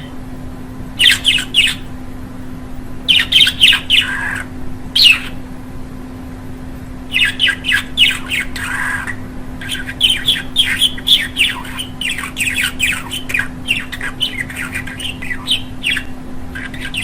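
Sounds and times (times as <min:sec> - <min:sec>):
steady low hum: 0:00.0 - 0:17.0
budgerigar chattering: 0:01.0 - 0:01.9, 0:03.1 - 0:05.4, 0:07.1 - 0:17.0.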